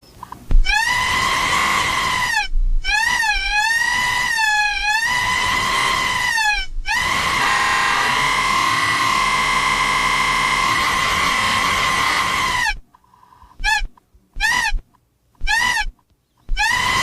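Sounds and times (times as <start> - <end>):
high buzzing tone: 0.5 - 12.7
high-pitched screaming: 0.6 - 12.8, 15.4 - 15.9, 16.5 - 17.0.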